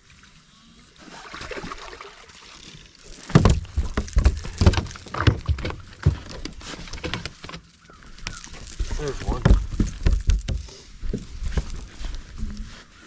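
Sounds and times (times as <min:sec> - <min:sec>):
knocks and thumps in a boat: 0:03.3 - 0:07.7, 0:08.9 - 0:11.6.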